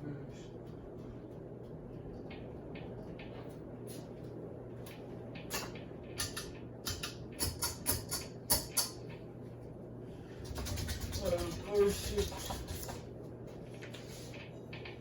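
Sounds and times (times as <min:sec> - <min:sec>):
ceiling fan motor humming: 0:00.0 - 0:15.0
sharp clicks and knocks: 0:05.4 - 0:09.0.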